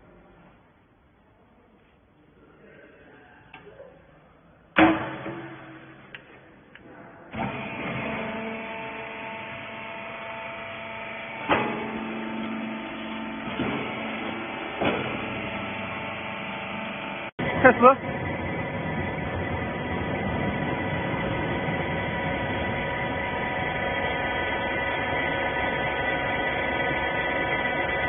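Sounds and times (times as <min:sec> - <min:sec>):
hydraulic baler motor humming: 0:07.3 - 0:28.0.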